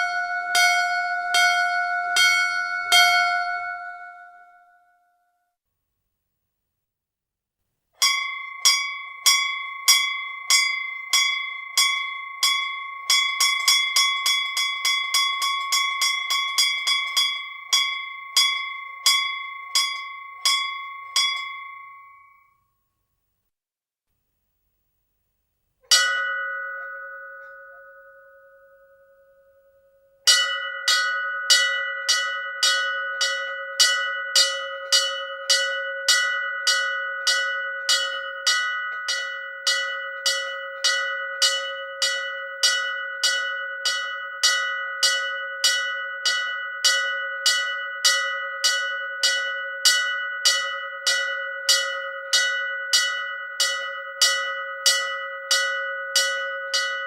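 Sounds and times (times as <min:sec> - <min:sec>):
temple bell ringing: 0:00.0 - 0:05.2, 0:25.9 - 0:57.0.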